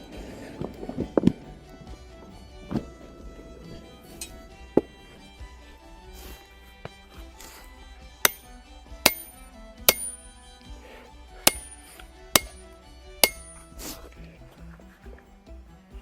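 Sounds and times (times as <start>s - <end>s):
hammer striking steel on anvil: 8.2s - 10.4s, 11.4s - 13.8s.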